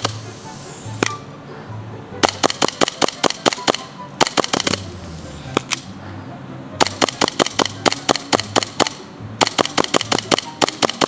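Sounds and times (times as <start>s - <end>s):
airsoft guns firing: 2.2s - 4.9s, 6.8s - 11.0s.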